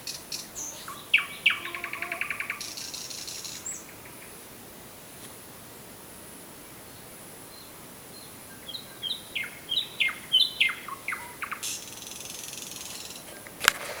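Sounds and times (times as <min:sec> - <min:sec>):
nightingale singing: 0:00.0 - 0:04.4, 0:06.9 - 0:13.4
sharp click: 0:13.6 - 0:14.0.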